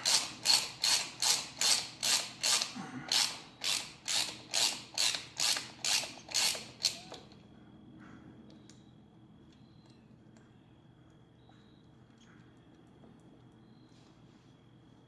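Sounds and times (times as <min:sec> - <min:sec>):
hand tool strokes on chain: 0:00.0 - 0:07.1.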